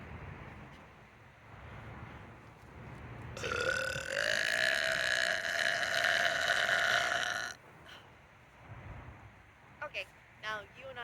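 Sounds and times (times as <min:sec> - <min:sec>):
woman burping: 0:03.4 - 0:07.6.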